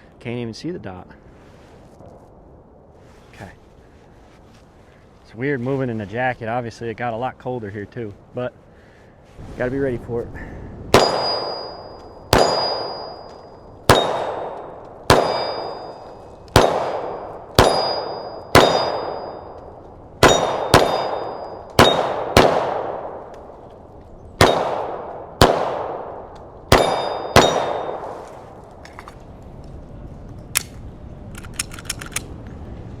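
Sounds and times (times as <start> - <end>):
pistol shots: 10.9 - 19.6, 20.2 - 23.4, 24.4 - 28.2
steel target ringing: 11.0 - 14.5, 15.1 - 19.6, 20.2 - 22.2, 26.7 - 28.1.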